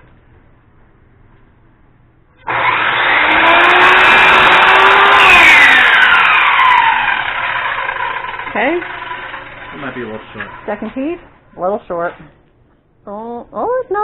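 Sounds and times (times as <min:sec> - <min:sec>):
radial arm saw cutting wood: 0:02.5 - 0:10.9.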